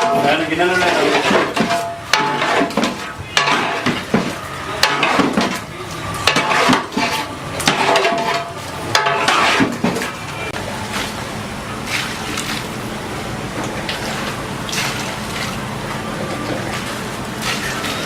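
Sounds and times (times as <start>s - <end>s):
metal utensil scraping metal pan: 0.0s - 10.5s.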